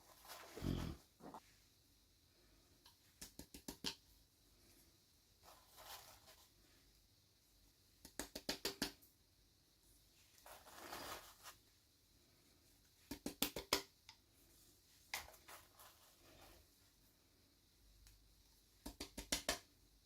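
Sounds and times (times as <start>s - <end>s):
soft rustle: 0.0s - 1.7s, 4.5s - 7.0s, 9.8s - 12.8s, 14.3s - 17.4s.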